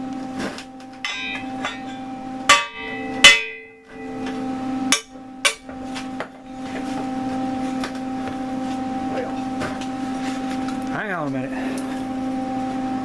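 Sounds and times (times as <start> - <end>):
steady low hum: 0.0 - 13.0
hammer blows on metal: 1.0 - 5.8.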